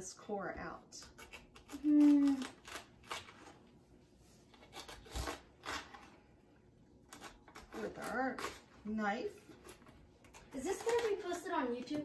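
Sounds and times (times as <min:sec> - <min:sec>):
person humming: 0:01.7 - 0:02.5
cabbage and knife rustles and scrapes: 0:07.1 - 0:12.0.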